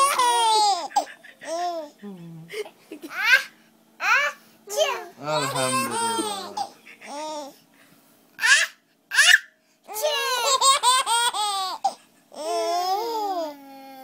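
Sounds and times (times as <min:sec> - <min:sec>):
child giggling: 0:00.0 - 0:03.5, 0:04.8 - 0:07.5.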